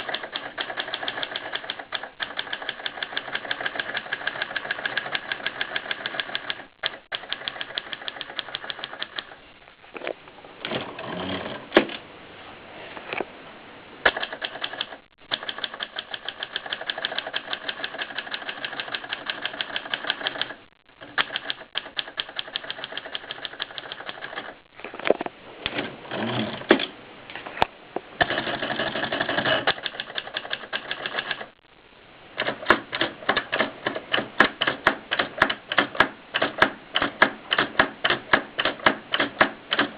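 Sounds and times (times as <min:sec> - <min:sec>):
manual typewriter keystrokes: 0:00.0 - 0:09.4, 0:14.0 - 0:24.6, 0:28.2 - 0:31.5, 0:32.4 - 0:39.9.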